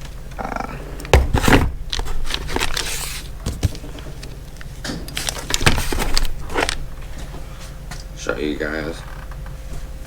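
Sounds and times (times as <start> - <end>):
scraping and rustling: 1.2 - 7.8.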